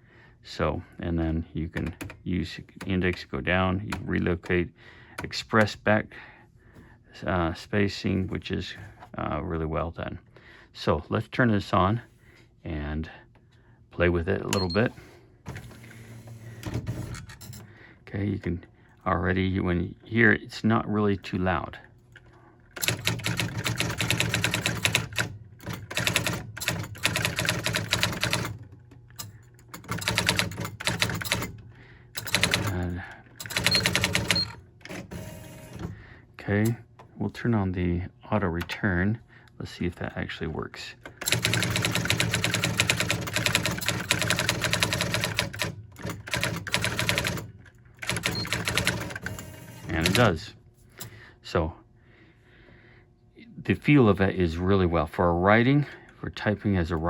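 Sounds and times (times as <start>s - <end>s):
electronic typewriter clattering: 1.8s - 2.2s, 15.5s - 17.7s, 22.8s - 35.9s, 41.2s - 50.4s.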